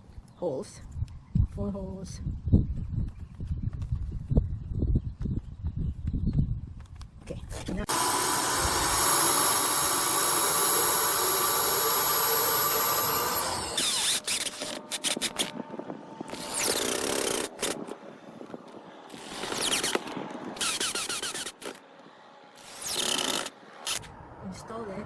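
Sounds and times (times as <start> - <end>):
power drill running: 7.9 - 14.7.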